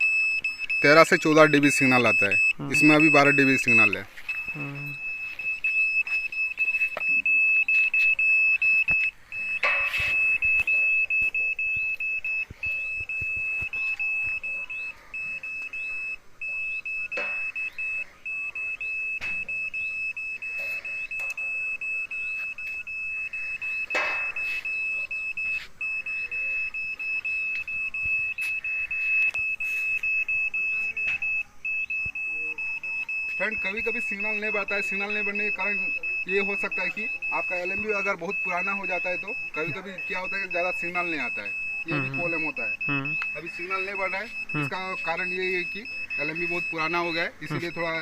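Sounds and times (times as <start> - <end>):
high-pitched meter tone: 0.0 - 48.0.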